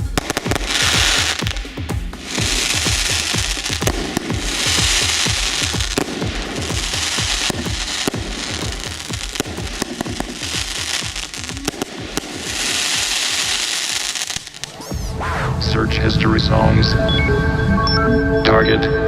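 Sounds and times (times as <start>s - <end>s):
fireworks hissing: 0.0s - 14.8s
fireworks bangs and crackling: 0.0s - 15.1s
background music with steady beat: 0.0s - 19.0s.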